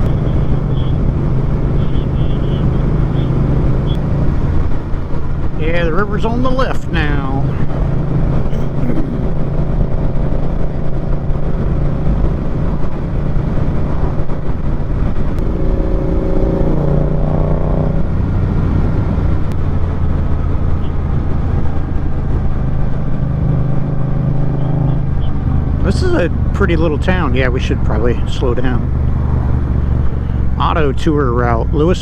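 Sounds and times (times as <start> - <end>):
wind rush: 0.0 - 24.6.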